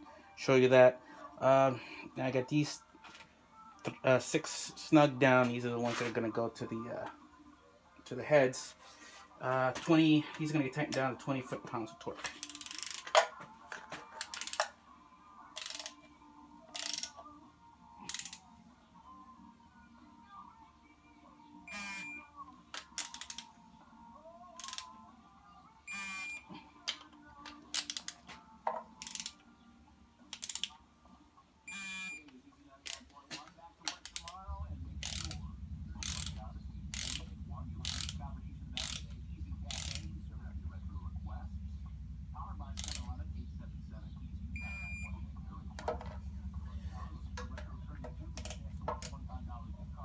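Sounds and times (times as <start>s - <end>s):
ratchet wrench clicking: 12.3s - 13.2s, 14.2s - 14.7s, 15.6s - 16.0s, 16.7s - 17.2s, 18.1s - 18.4s, 22.8s - 23.5s, 24.6s - 24.9s, 27.7s - 28.3s, 29.0s - 29.4s, 30.4s - 30.7s, 32.8s - 33.1s, 33.9s - 40.2s, 42.7s - 43.1s, 47.4s - 49.1s
low steady hum: 34.0s - 50.0s.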